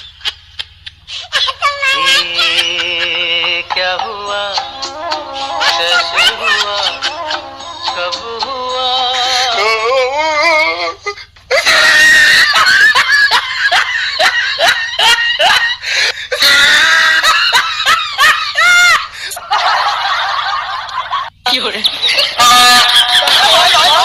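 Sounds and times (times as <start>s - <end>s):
people laughing hard: 0.0s - 4.0s, 5.3s - 8.1s, 11.5s - 21.3s, 21.9s - 24.0s
person shrieking: 11.5s - 12.7s.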